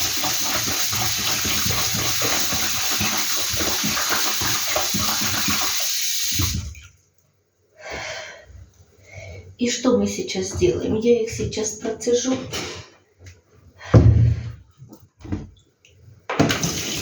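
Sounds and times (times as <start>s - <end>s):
tap running into sink: 16.3s - 17.0s.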